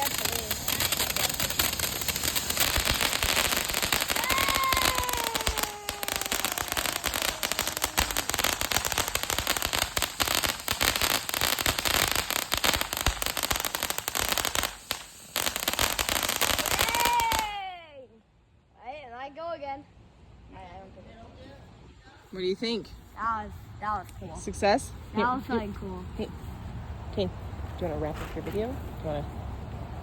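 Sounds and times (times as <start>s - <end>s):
firework whistle: 0.0s - 8.8s
fireworks crackling and popping: 0.0s - 17.7s.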